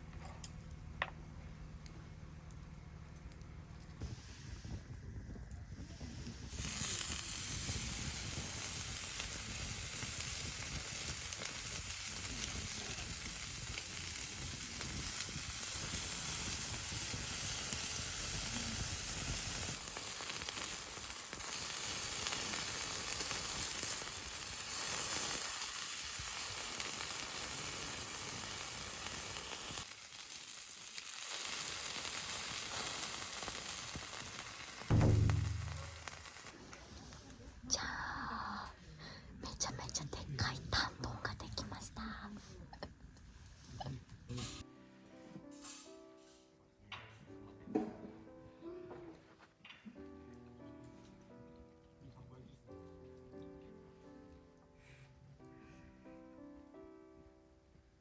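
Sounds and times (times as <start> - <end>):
food sizzling in a hot pan: 6.2 - 36.6.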